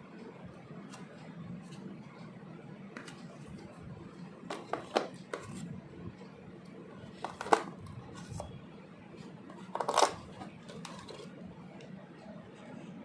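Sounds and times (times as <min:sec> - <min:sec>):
plastic pieces clattering: 0:09.6 - 0:11.2.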